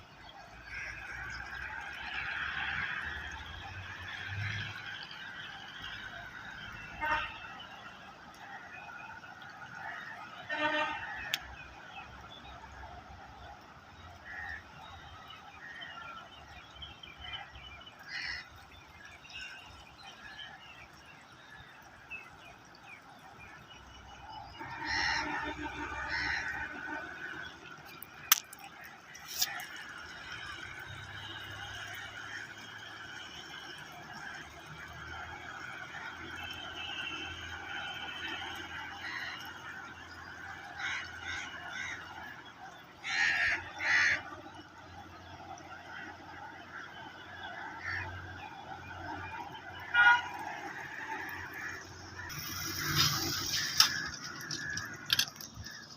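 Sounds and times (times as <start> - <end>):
loud honks: 7.0 - 7.6, 10.4 - 11.4, 49.8 - 51.0
waterfowl calling: 13.4 - 16.2, 24.3 - 30.6, 35.5 - 55.9.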